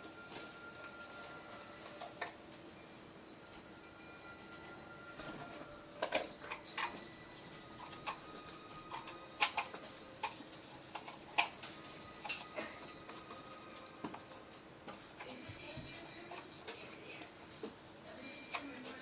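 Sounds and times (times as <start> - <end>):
faint steady background noise: 0.0 - 19.0.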